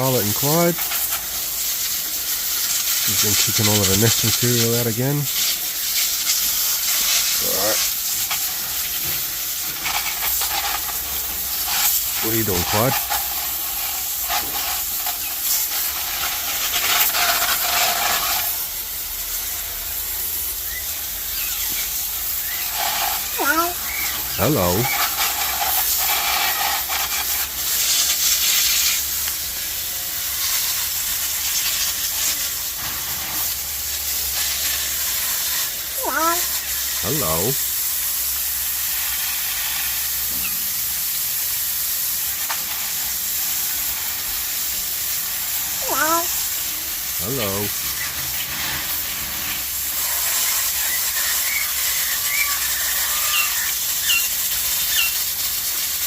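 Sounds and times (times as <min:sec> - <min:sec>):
steady hiss: 0:00.0 - 0:56.0
water spraying: 0:00.0 - 0:56.0.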